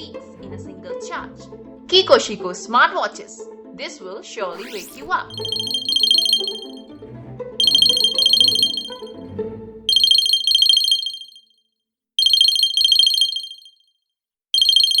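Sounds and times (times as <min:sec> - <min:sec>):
background music: 0:00.0 - 0:10.0
smartwatch alarm warbling: 0:04.6 - 0:06.9, 0:07.6 - 0:09.1, 0:09.9 - 0:11.5, 0:12.2 - 0:13.8, 0:14.6 - 0:15.0.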